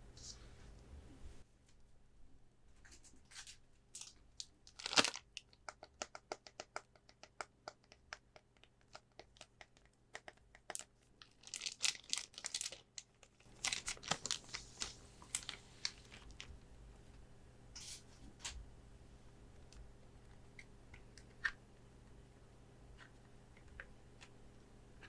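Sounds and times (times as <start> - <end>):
plastic packaging crinkling: 4.0 - 5.6, 10.7 - 16.6
clicks and taps: 5.5 - 10.8.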